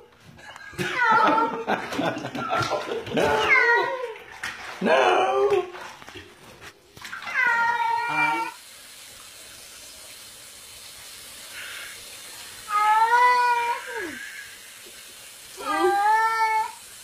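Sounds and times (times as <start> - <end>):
running water hiss: 5.6 - 17.0
cat meowing: 7.2 - 8.6.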